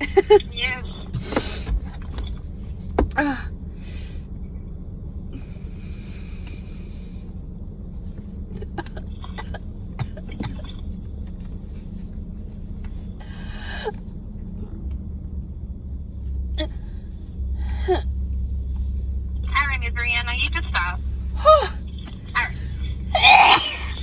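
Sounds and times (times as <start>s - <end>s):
person coughing or sneezing: 8.6s - 10.8s, 23.2s - 24.0s.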